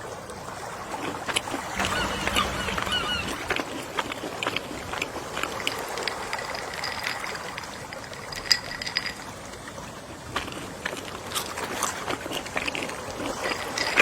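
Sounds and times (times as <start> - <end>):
sea waves lapping: 0.0 - 14.0.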